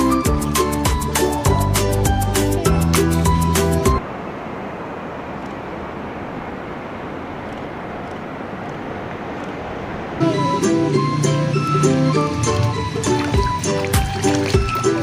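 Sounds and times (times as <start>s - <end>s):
music: 0.0s - 4.0s, 10.2s - 15.0s
steady rushing noise: 4.0s - 14.8s.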